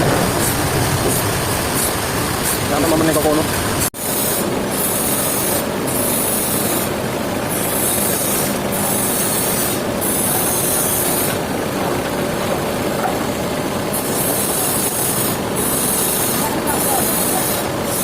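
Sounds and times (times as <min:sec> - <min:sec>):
saw rasping through log: 0:04.0 - 0:11.4, 0:13.9 - 0:18.0.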